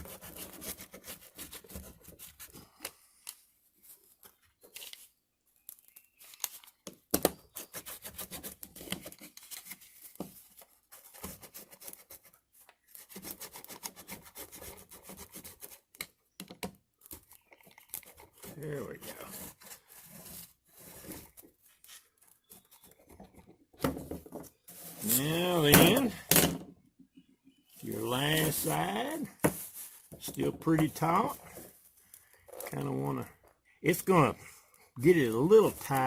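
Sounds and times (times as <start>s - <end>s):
roller rubbing and scraping: 18.3s - 23.3s, 24.5s - 26.2s, 27.7s - 31.8s.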